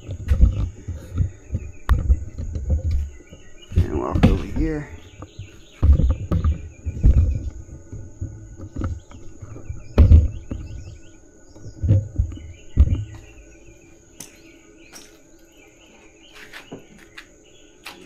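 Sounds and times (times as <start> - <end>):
dull thumps: 0.0 - 15.2
birds chirping: 0.0 - 18.0
high insect drone: 0.0 - 18.0.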